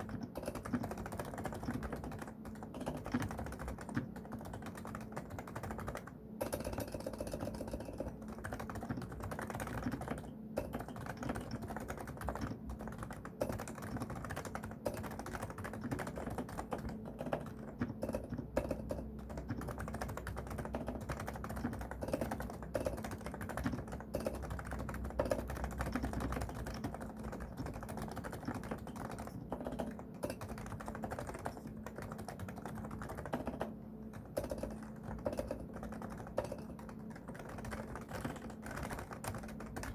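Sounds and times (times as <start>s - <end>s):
keyboard typing: 0.0s - 39.9s.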